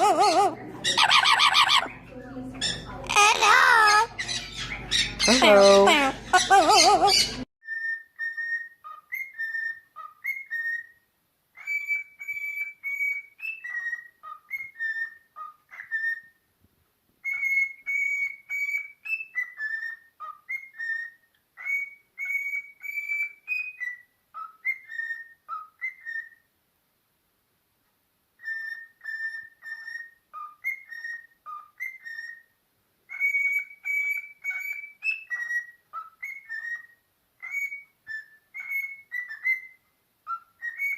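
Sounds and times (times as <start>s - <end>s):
parrot whistling a tune: 6.4s - 16.4s, 17.2s - 26.5s, 28.4s - 32.5s, 33.1s - 40.9s.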